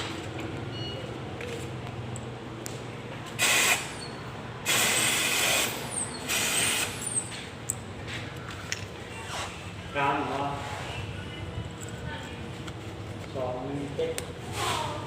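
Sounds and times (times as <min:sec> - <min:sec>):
pneumatic impact wrench hissing: 0:03.4 - 0:07.4.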